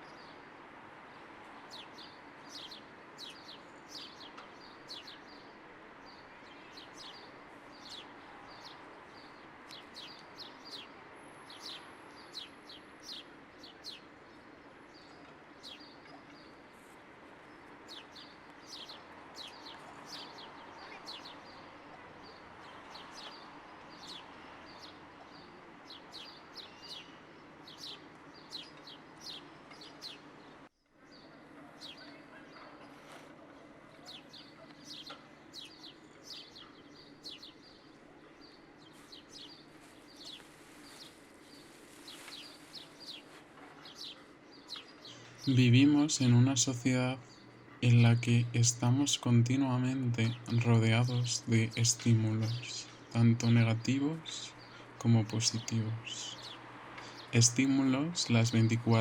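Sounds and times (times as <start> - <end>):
outdoor ambience hiss: 0.0 - 59.0
small birds chirping: 0.0 - 59.0.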